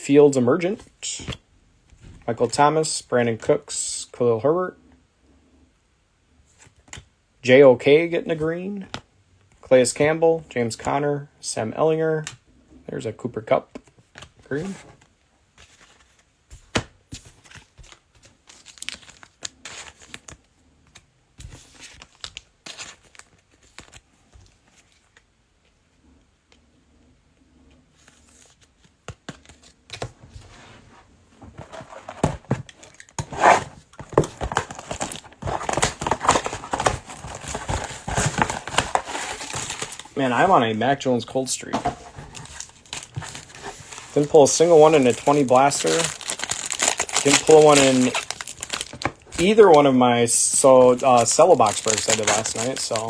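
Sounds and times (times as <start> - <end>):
wrappers torn and crinkled: 32.8 - 40.5, 42.0 - 53.0.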